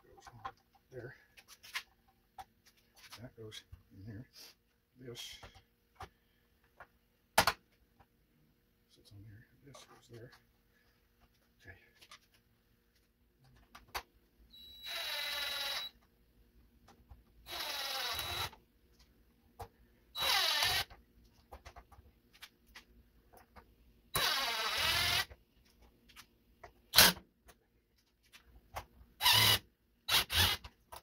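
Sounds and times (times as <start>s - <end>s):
cordless drill motor: 14.5s - 15.9s, 17.4s - 18.6s, 20.2s - 20.9s, 24.2s - 25.4s, 29.2s - 30.7s.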